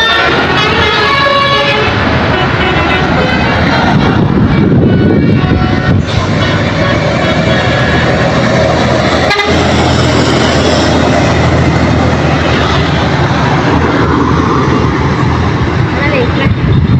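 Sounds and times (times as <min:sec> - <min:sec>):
truck horn: 0:00.0 - 0:10.9
engine and road noise: 0:00.0 - 0:16.9.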